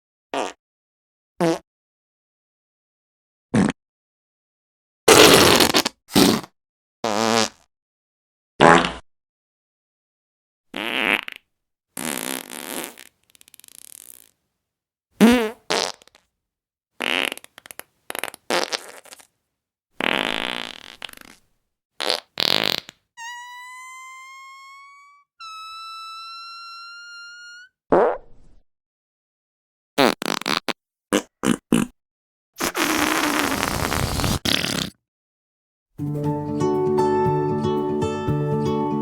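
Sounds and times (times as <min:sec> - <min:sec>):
fart sound effects: 0:03.5 - 0:03.8, 0:05.1 - 0:06.5, 0:07.1 - 0:07.7, 0:08.6 - 0:09.0, 0:10.7 - 0:11.4, 0:12.0 - 0:14.3, 0:15.2 - 0:16.2, 0:17.0 - 0:19.3, 0:20.0 - 0:21.4, 0:22.0 - 0:28.6, 0:30.0 - 0:32.0, 0:32.6 - 0:35.0
high-pitched squeaky farts: 0:05.1 - 0:06.5, 0:08.6 - 0:09.0, 0:15.2 - 0:16.1, 0:17.0 - 0:19.3, 0:20.0 - 0:21.4, 0:22.0 - 0:28.5, 0:32.6 - 0:35.0.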